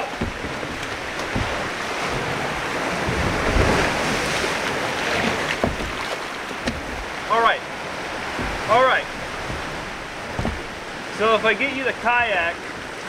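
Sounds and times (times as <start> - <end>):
wind rumbling on microphone: 0.0 - 11.3
ocean surf washing in: 0.0 - 13.0.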